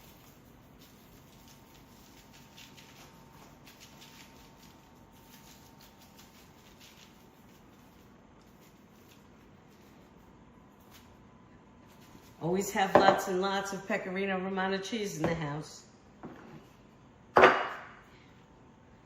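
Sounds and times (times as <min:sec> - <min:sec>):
grated cheese sprinkled on tray: 0:00.0 - 0:11.2, 0:11.8 - 0:12.8
faint steady hum: 0:00.0 - 0:19.0.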